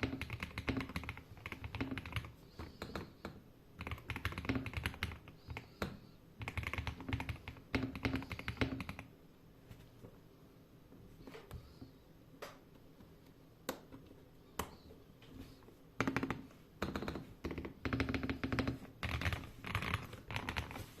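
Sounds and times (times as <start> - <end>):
mechanical keyboard typing: 0.0 - 3.1, 3.8 - 5.7, 6.4 - 9.1, 16.0 - 20.8.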